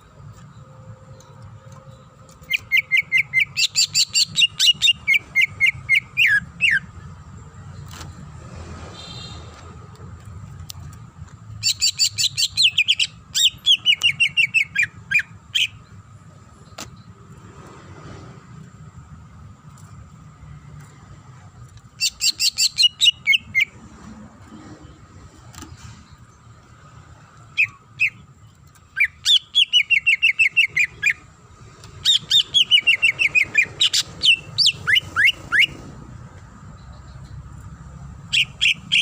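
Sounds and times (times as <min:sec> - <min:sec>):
bird singing chirps and whistles: 0:02.4 - 0:06.9, 0:11.6 - 0:16.0, 0:27.6 - 0:28.2, 0:28.9 - 0:31.2, 0:32.0 - 0:35.8.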